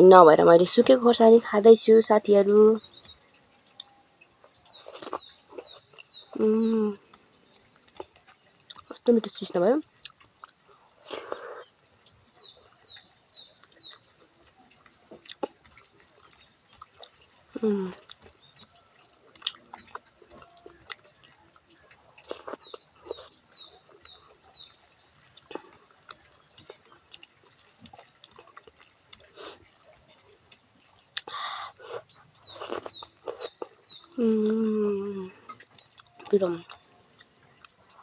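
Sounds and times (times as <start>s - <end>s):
wet chewing: 0.0s - 38.0s
bird calling: 31.3s - 37.0s.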